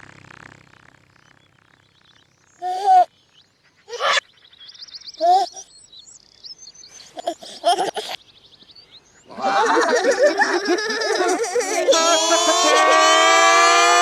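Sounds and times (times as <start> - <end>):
reversed birdsong: 0.2 - 14.0.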